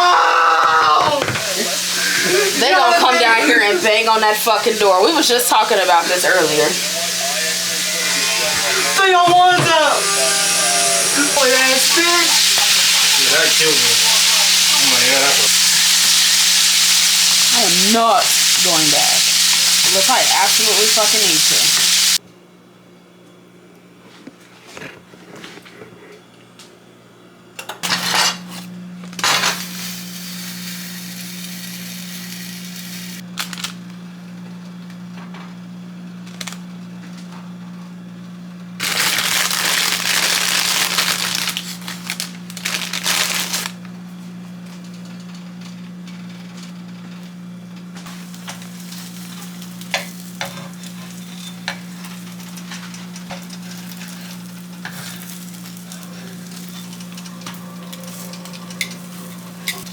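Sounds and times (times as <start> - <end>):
chicken sizzling in a pan: 1.4 - 9.0, 9.8 - 22.2, 29.2 - 33.2, 38.8 - 42.0, 48.0 - 59.9.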